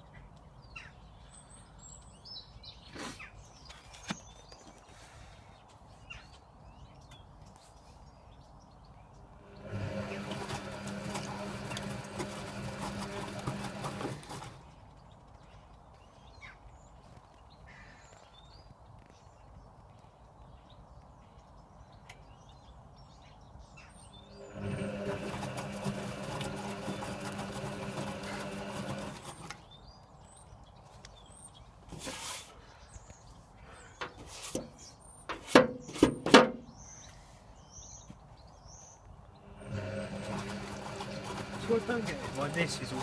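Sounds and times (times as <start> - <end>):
washing machine drum motor humming: 9.4 - 14.6, 24.2 - 29.6, 39.4 - 43.0.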